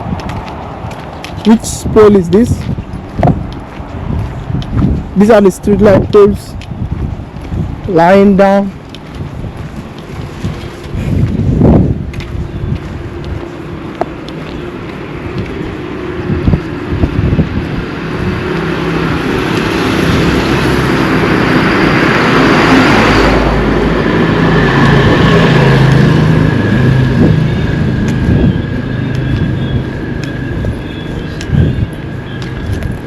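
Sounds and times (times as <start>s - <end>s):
wind rumbling on microphone: 0.0s - 33.0s
vehicle passing by: 9.1s - 33.0s.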